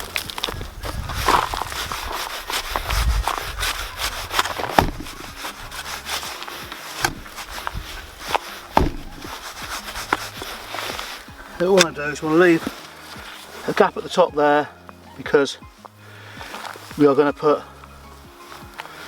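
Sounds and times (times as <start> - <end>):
compost scraping and rustling: 0.0 - 19.0
sharp knocks: 4.8 - 5.2, 8.8 - 9.5.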